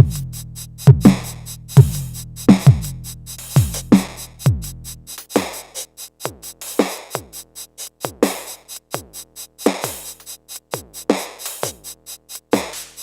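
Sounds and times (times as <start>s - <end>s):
fast hi-hat ticks: 0.0s - 13.0s.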